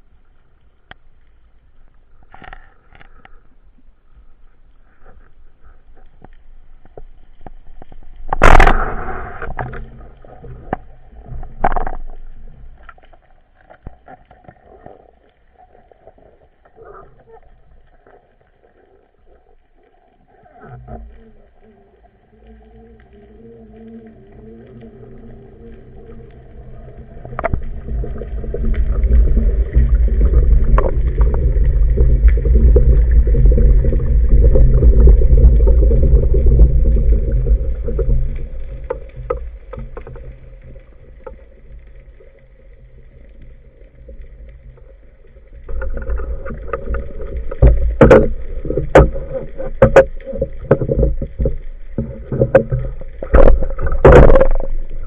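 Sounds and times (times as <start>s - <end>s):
wind and water rumble: 0.0s - 55.0s
hull slapping water: 23.1s - 42.4s, 43.0s - 55.0s.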